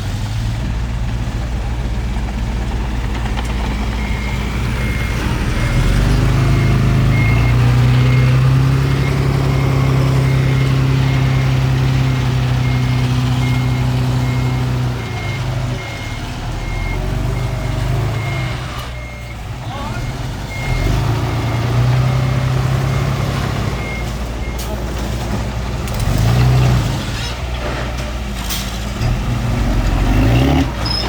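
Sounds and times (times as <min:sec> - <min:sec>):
diesel truck engine: 0:00.0 - 0:31.0
reversing alarm beeping: 0:03.9 - 0:24.6.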